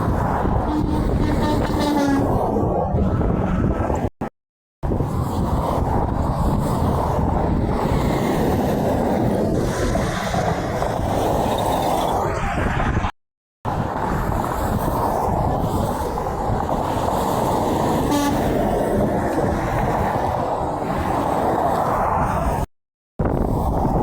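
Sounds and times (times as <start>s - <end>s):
trucks passing close: 0.0s - 3.0s, 16.2s - 22.1s
heavy highway traffic roar: 0.0s - 4.2s, 4.8s - 13.0s, 13.7s - 22.7s.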